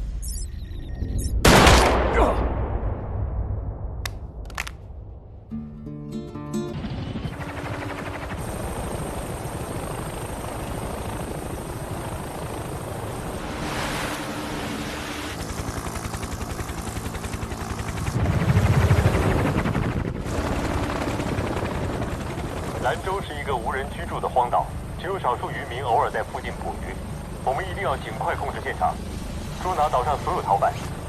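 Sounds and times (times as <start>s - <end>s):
helicopter rotor chopping: 6.7s - 31.0s.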